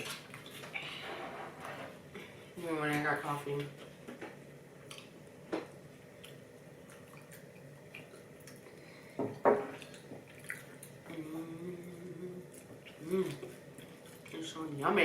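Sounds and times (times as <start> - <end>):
wet chewing: 6.2 - 8.9, 9.7 - 11.2, 12.4 - 14.4.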